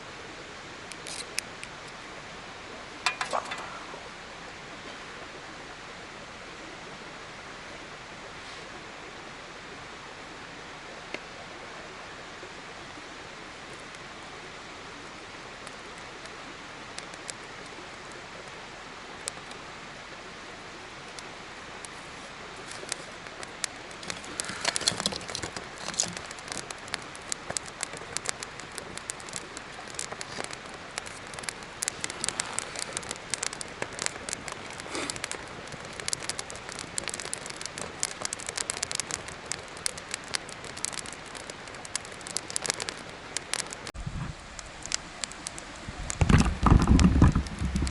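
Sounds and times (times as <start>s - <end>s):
campfire hissing: 0.0s - 47.9s
burning wood crackling and popping: 0.8s - 2.1s, 2.9s - 4.1s, 15.0s - 19.7s, 20.5s - 47.9s.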